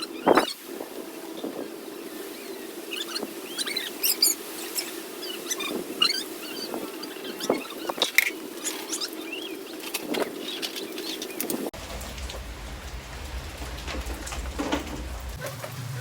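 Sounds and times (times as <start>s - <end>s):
small birds chirping: 0.0s - 16.0s
low steady hum: 11.8s - 16.0s.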